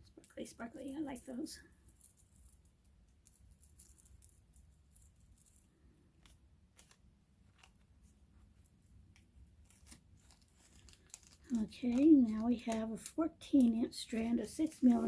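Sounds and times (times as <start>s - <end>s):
beads and packaging clicking: 0.1s - 7.9s, 8.6s - 13.8s.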